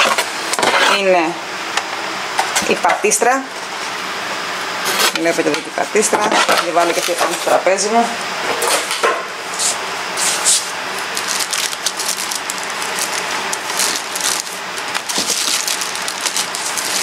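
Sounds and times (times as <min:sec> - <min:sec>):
box packaging rustling and scraping: 0:06.2 - 0:07.6, 0:09.5 - 0:17.0.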